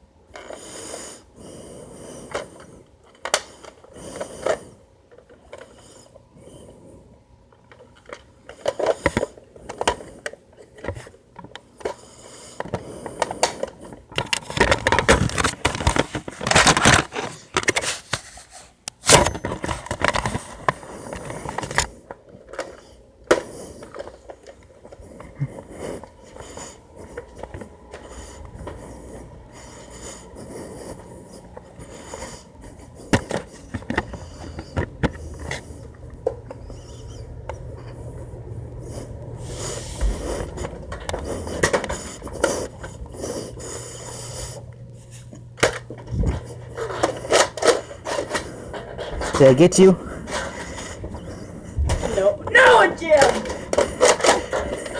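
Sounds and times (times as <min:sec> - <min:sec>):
scraping and rustling handling noise: 0:12.6 - 0:38.0, 0:38.8 - 0:54.9.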